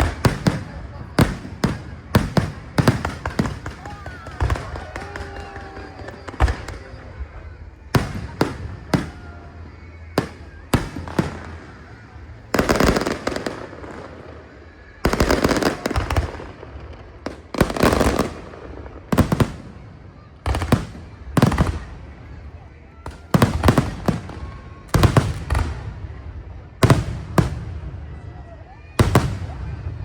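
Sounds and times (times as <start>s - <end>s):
crackling firework bursts: 0.0s - 30.0s
fireworks bangs: 0.0s - 30.0s.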